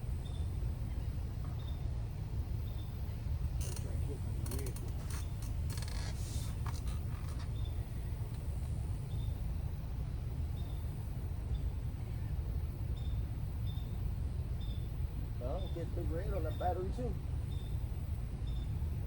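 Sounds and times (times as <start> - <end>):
wind rumble on microphone: 0.0 - 19.0
sharp clicks: 3.6 - 7.6.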